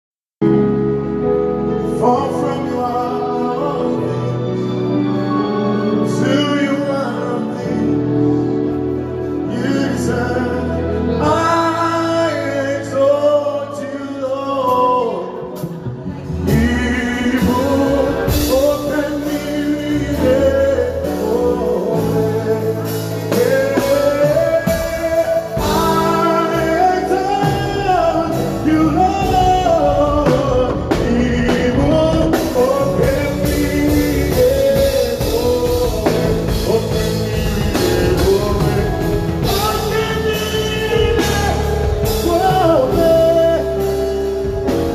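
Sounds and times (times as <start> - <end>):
bass: 0.4 - 44.9
person singing: 0.4 - 44.9
guitar: 0.5 - 44.9
drums: 14.6 - 44.9.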